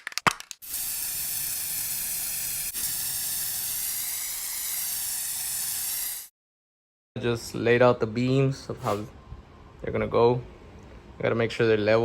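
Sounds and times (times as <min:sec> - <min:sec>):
steady hiss: 0:00.7 - 0:05.0.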